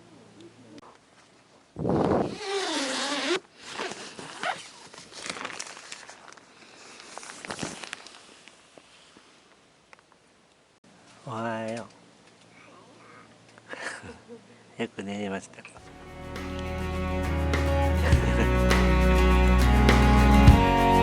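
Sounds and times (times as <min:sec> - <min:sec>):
rustling: 0:00.8 - 0:10.2
zipper pulled open: 0:01.8 - 0:06.4.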